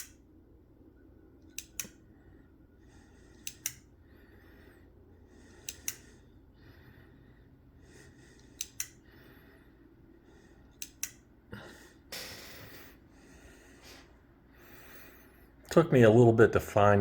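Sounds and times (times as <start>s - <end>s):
flasher relay clicking: 0.0s - 0.3s, 1.4s - 2.1s, 3.3s - 4.0s, 5.4s - 6.3s, 8.3s - 9.3s, 10.6s - 11.4s
breath close to microphone: 11.5s - 15.6s.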